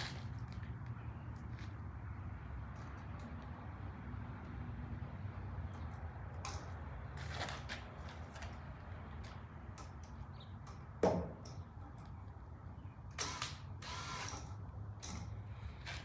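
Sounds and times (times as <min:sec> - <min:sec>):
clicks and scrapes of wiring: 0:07.2 - 0:10.0.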